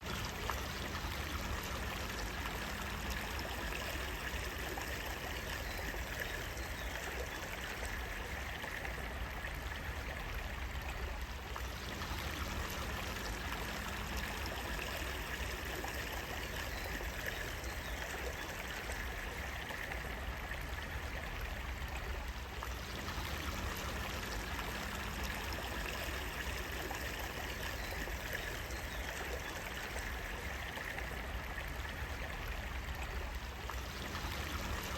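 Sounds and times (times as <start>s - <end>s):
running water flowing: 0.0s - 34.9s.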